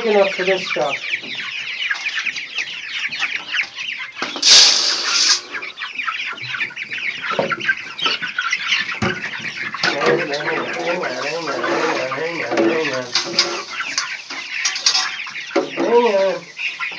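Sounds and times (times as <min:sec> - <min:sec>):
chicks peeping: 0:00.0 - 0:16.9.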